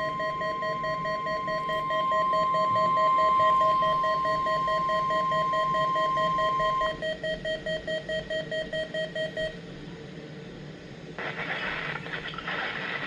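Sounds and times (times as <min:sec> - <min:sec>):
radio receiver alert beeps: 0:00.0 - 0:09.5
steady warning alarm tone: 0:00.0 - 0:09.6.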